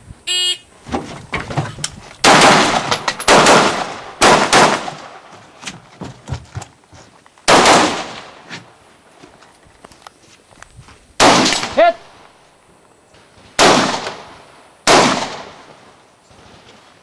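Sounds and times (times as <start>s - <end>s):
rifle shots: 2.2s - 5.3s, 7.5s - 8.4s, 11.2s - 11.9s, 13.6s - 15.7s.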